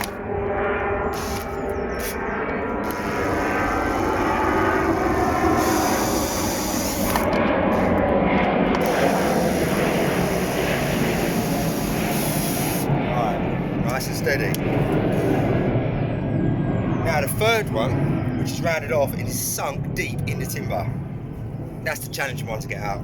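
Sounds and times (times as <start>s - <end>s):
drill-driver running: 1.1s - 8.1s, 8.7s - 12.9s.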